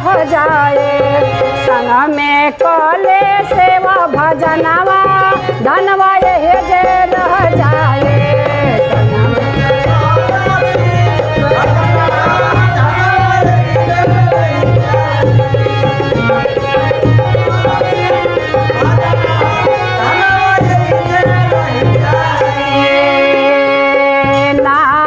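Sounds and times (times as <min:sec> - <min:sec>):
hand drum beat: 0:02.7 - 0:22.6
sustained wandering melody: 0:04.7 - 0:23.0.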